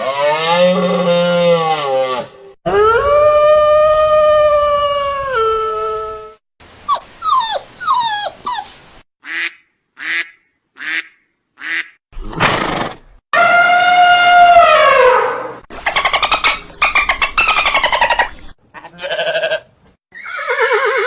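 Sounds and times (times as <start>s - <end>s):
rough animal cry: 0.0s - 5.8s, 12.2s - 21.0s
dog-like howl: 0.2s - 6.4s, 13.4s - 15.6s.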